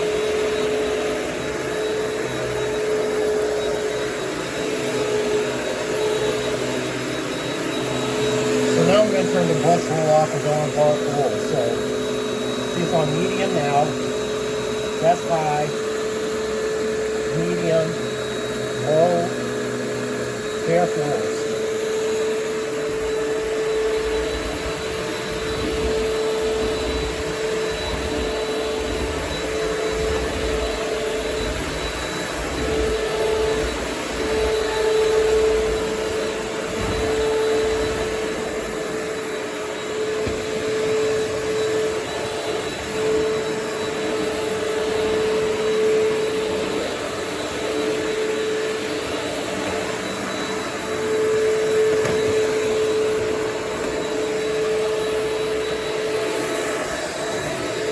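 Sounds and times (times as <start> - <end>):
vacuum cleaner whining: 0.0 - 57.9.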